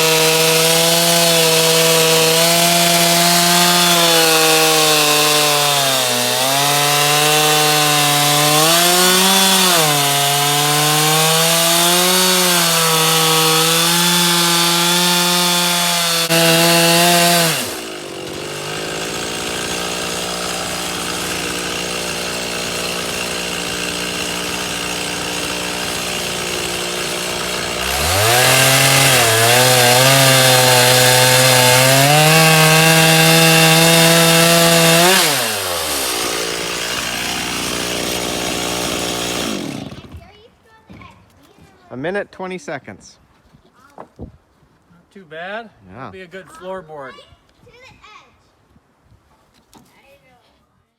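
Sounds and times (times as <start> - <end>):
chainsaw cutting log: 0.0 - 40.5.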